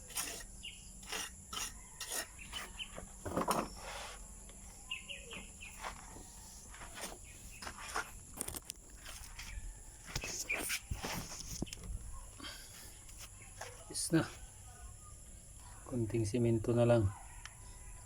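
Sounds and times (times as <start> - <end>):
scraping and tapping on masonry: 0.0 - 4.2
birds chirping: 4.6 - 8.2.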